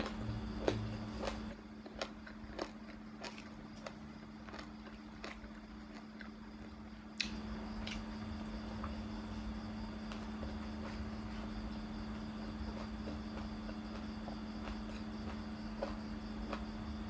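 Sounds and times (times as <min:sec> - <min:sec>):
chewing and biting food: 0:00.0 - 0:17.0
steady low hum: 0:00.0 - 0:17.0.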